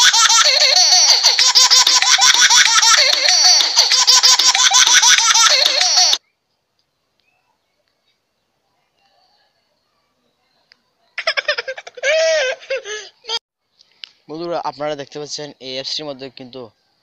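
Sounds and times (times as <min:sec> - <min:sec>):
baby giggling and laughing: 0:00.0 - 0:06.2, 0:11.2 - 0:13.4.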